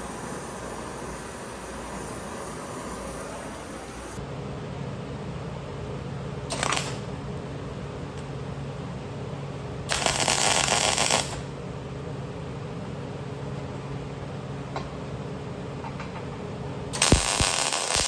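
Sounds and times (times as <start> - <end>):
electric arc welding: 0.0 - 4.2, 6.5 - 7.1, 9.9 - 11.5, 17.0 - 18.0
steady machine hum: 0.0 - 15.7.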